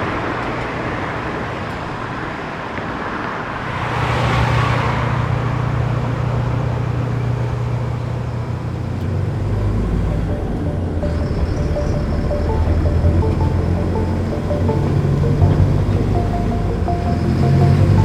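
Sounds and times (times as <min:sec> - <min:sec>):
vehicle passing: 0:03.4 - 0:07.7, 0:09.1 - 0:18.0
low engine hum: 0:03.6 - 0:18.0.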